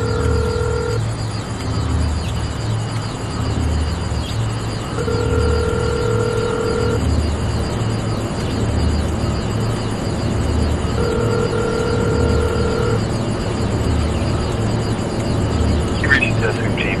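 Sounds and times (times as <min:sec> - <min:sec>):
throbbing low rumble: 0:06.8 - 0:17.0
steady hiss: 0:13.1 - 0:17.0.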